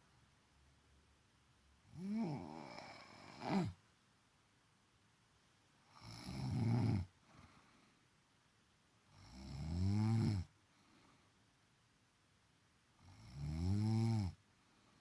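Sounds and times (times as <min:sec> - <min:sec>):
woman snoring: 0:01.9 - 0:03.8, 0:05.9 - 0:07.1, 0:09.1 - 0:10.5, 0:13.0 - 0:14.4.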